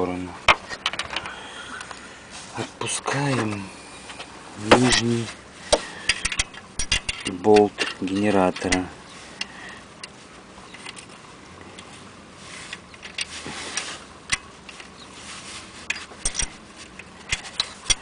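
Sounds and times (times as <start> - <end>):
tool scraping on metal: 15.2 - 18.0
wrench clicking on bolt: 15.9 - 16.6.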